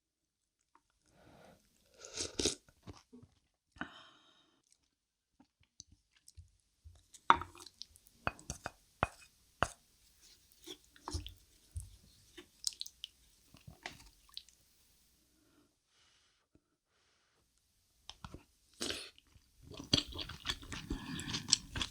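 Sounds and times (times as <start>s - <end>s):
close chewing with wet mouth sounds: 7.4s - 8.0s, 10.6s - 14.6s, 18.8s - 21.9s.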